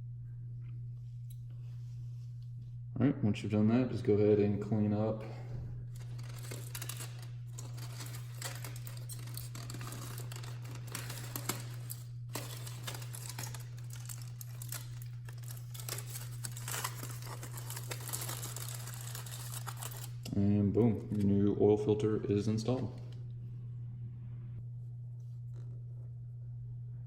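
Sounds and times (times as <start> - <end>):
steady low hum: 0.0 - 27.0
paper towel crinkling: 12.2 - 20.2.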